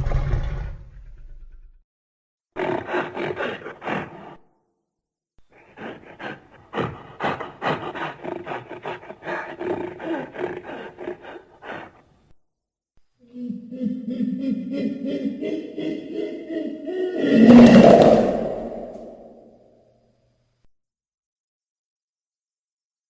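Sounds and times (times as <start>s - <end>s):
monster growling: 0.0s - 1.5s, 5.6s - 11.9s, 13.3s - 19.6s.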